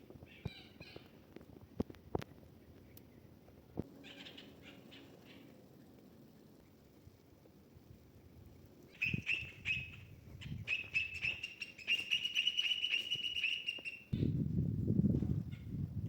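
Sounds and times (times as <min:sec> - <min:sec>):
bird trilling: 0:08.9 - 0:14.2.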